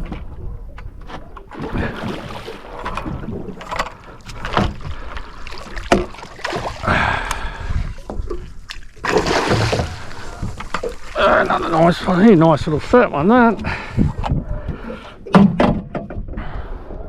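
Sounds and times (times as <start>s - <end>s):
water splashing: 1.5s - 12.9s
fish splashing: 1.6s - 7.6s, 8.2s - 11.8s
knocks on a small boat: 15.3s - 16.3s.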